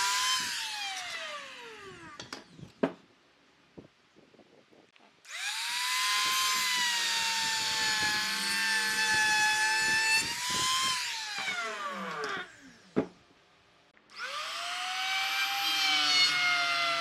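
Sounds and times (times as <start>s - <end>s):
power tool cutting wood: 0.0s - 2.3s, 5.3s - 12.8s, 14.1s - 17.0s.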